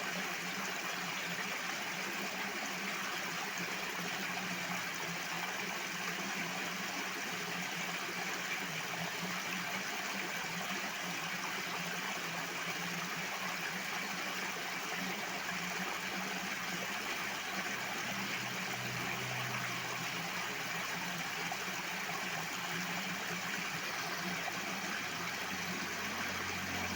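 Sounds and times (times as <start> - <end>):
water rushing: 18.1 - 26.9.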